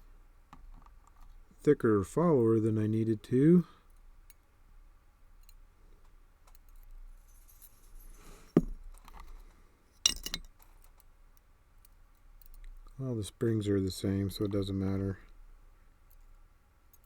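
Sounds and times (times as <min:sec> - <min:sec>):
metallic clicks and clinks: 0:10.0 - 0:11.1.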